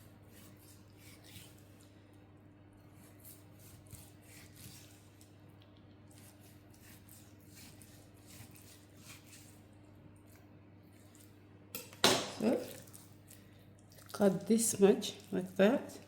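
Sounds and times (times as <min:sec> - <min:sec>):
knife slicing meat: 0:00.0 - 0:01.9, 0:02.8 - 0:05.3, 0:06.1 - 0:09.7
low steady hum: 0:00.0 - 0:16.0.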